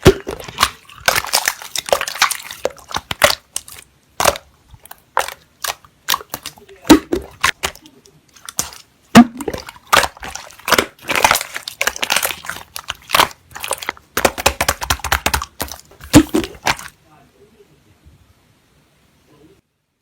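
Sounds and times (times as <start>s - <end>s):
sticky slime clicks and pops: 8.5s - 16.9s.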